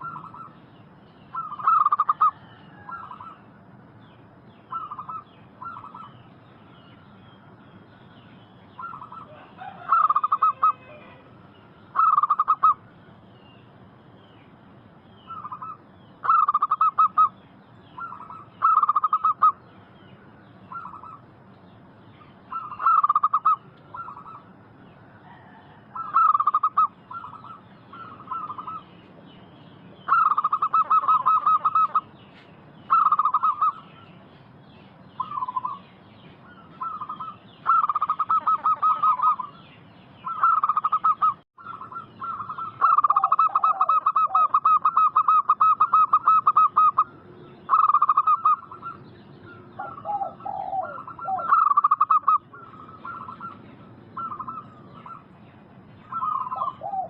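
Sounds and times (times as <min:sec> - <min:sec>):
doves trilled cooing: 0:00.0 - 0:14.6, 0:15.2 - 0:57.0
lower dove coos: 0:01.3 - 0:03.5, 0:08.8 - 0:11.3, 0:15.3 - 0:17.3, 0:18.0 - 0:19.6, 0:22.5 - 0:24.5, 0:25.2 - 0:28.9, 0:30.1 - 0:32.1, 0:36.5 - 0:39.5, 0:40.3 - 0:47.1, 0:47.7 - 0:49.0, 0:49.8 - 0:53.6, 0:54.2 - 0:55.2, 0:56.0 - 0:57.0.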